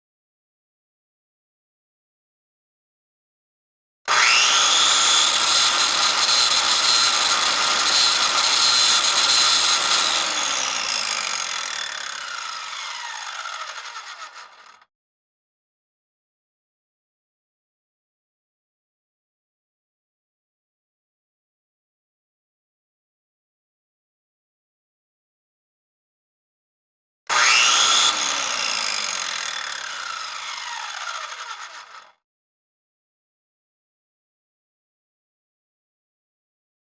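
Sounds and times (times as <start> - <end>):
circular saw whining: 4.1 - 14.8, 27.3 - 32.2.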